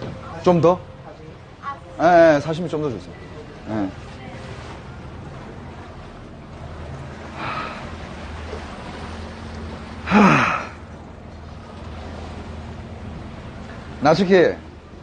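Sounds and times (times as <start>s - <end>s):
boat engine hum: 0.0s - 15.0s
person sighing: 10.1s - 10.8s.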